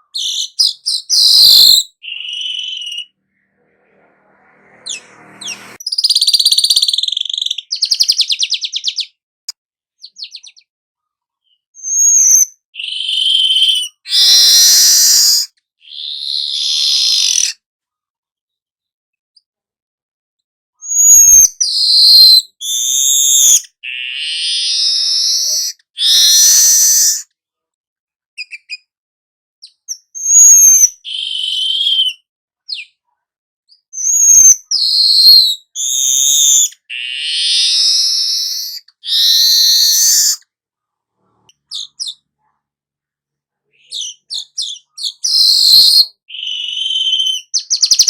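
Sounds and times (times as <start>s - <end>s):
weaver bird buzzy song: 0.2s - 9.2s, 11.5s - 17.6s, 20.8s - 27.2s, 29.6s - 33.0s, 33.7s - 40.4s, 43.8s - 48.0s.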